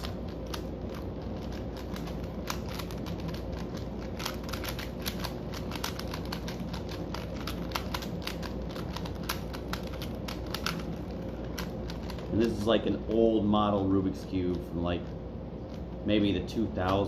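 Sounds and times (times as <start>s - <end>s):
puzzle cube clicking: 0.0s - 13.2s
steady low hum: 0.0s - 17.0s.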